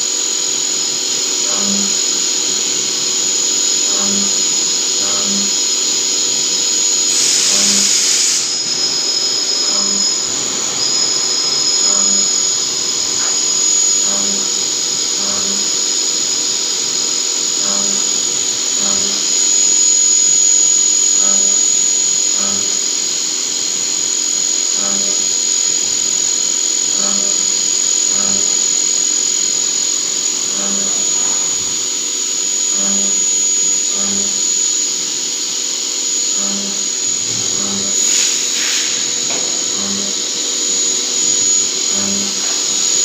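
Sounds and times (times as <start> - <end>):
machine tool high-pitched whine: 0.0 - 43.0
burst of hiss: 2.7 - 13.5, 36.4 - 43.0.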